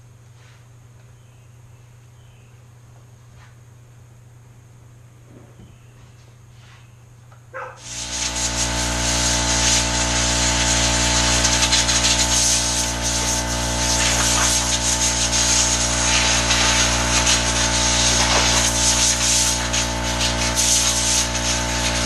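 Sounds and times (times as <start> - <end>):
electric power tool cutting wood: 7.8 - 22.0.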